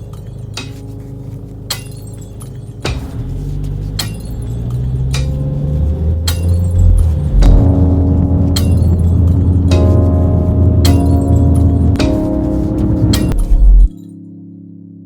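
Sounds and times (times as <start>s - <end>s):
bright clinking beat: 1.7s - 14.1s
held bass notes: 3.0s - 13.9s.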